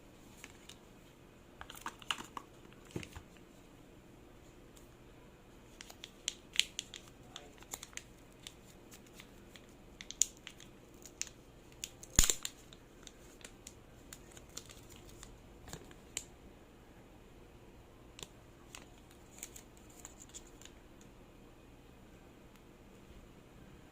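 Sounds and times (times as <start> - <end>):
packaging tearing: 5.8 - 15.8.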